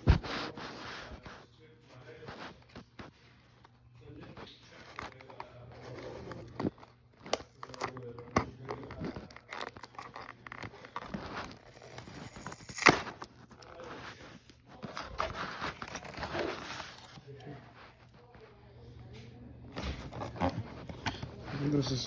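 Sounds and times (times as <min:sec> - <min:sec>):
packaging rustling and tearing: 0:04.4 - 0:17.3.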